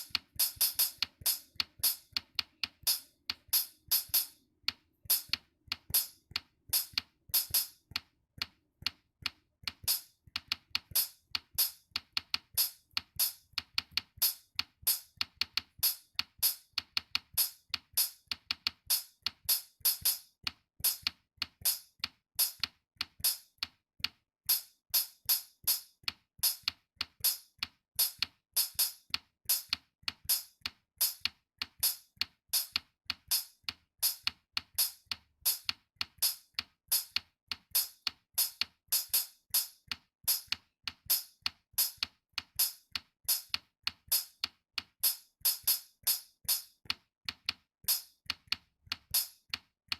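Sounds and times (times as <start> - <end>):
drum machine beat: 0.0 - 4.2.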